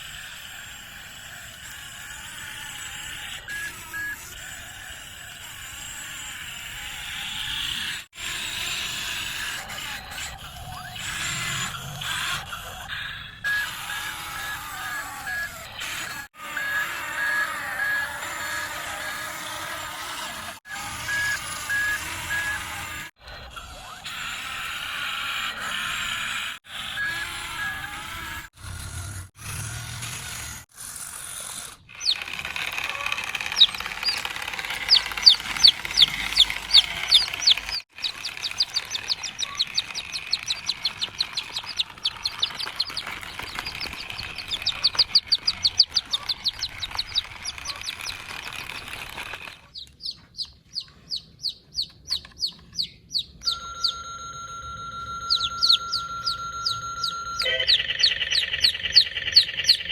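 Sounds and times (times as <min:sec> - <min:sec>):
fast beeping: 0:21.0 - 0:22.8, 0:32.0 - 0:49.5, 0:53.4 - 0:59.9
high bird-like chirps: 0:31.9 - 0:54.2, 0:54.9 - 0:59.9
steady electronic tones: 0:33.4 - 0:47.6, 0:53.4 - 0:59.9.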